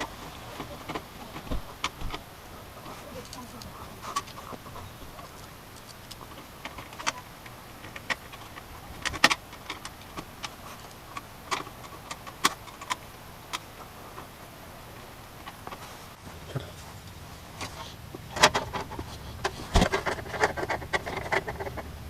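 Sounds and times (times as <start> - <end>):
hard plastic parts clicking: 3.2 - 14.3, 17.7 - 21.9.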